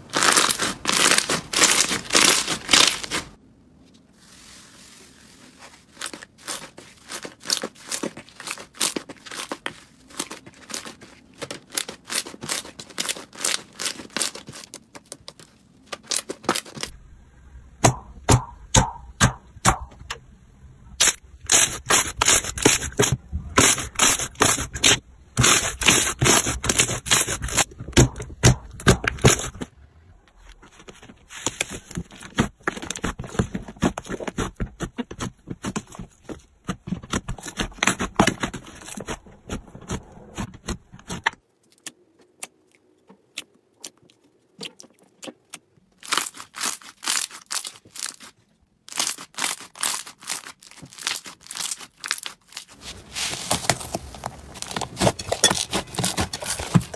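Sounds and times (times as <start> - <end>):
slime crackling and popping: 0.1 - 3.3.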